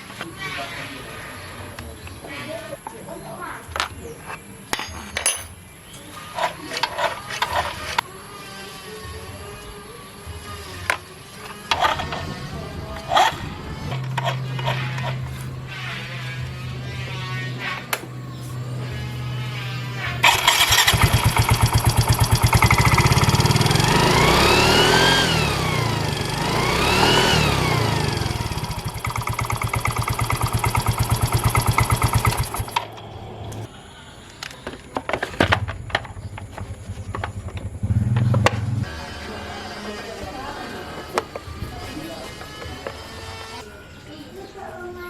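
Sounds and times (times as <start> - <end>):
scooter engine revving: 10.6 - 33.7, 36.1 - 43.6
scattered clicks: 20.2 - 33.7.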